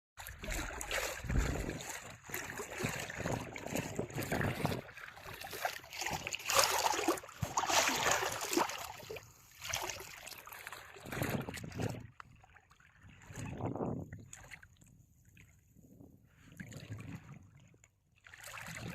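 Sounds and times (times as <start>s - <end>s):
sea water washing in surges: 0.2s - 12.4s.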